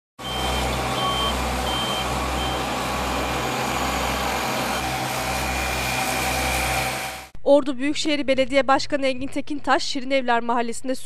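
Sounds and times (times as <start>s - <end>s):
reversing alarm beeping: 0.2s - 5.9s
heavy vehicle engine running: 0.2s - 7.4s.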